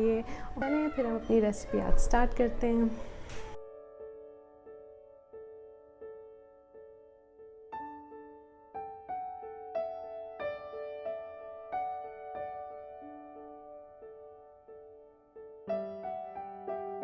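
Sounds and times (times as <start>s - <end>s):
soft piano music: 0.0s - 17.0s.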